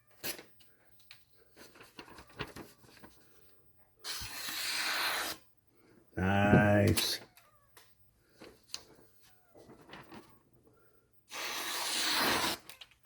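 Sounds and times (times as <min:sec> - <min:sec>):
paper rustling: 0:01.4 - 0:03.4, 0:09.5 - 0:10.4
knife slicing paper: 0:04.1 - 0:05.4, 0:11.3 - 0:12.8.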